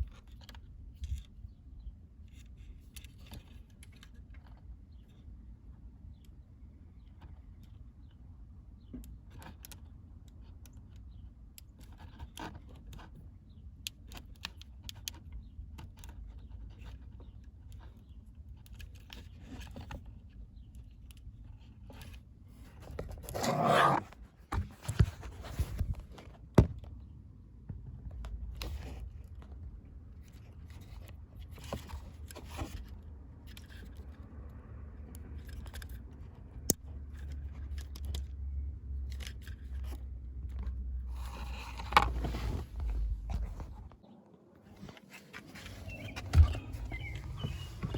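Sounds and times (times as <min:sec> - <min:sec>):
light clicks and scrapes: 0:02.2 - 0:05.3, 0:08.8 - 0:26.5, 0:27.9 - 0:34.4, 0:35.0 - 0:44.0, 0:44.6 - 0:47.9
scraping rustle: 0:22.6 - 0:26.4, 0:41.1 - 0:43.9, 0:44.8 - 0:47.9.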